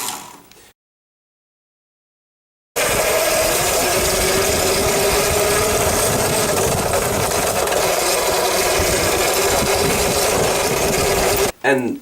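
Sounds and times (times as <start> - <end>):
electric motor whine: 2.8 - 11.5.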